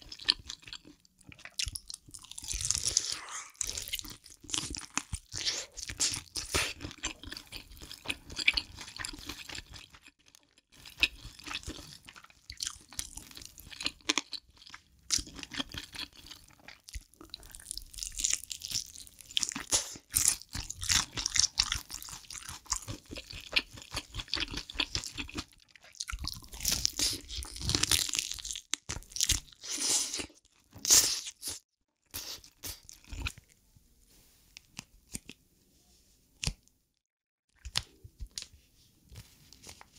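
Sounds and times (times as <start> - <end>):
crunchy bites and chewing: 0.0 - 31.6.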